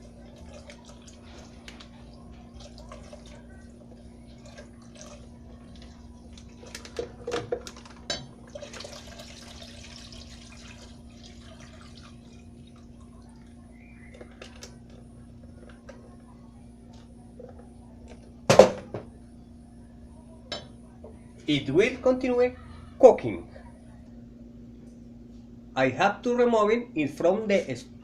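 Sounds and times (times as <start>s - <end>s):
milk poured and stirred in pot: 0.0s - 18.4s
steady low hum: 0.0s - 28.0s.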